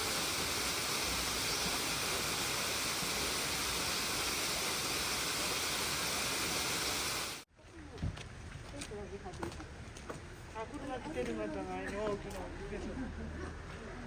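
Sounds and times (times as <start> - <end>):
waterfall roaring: 0.0 - 7.4.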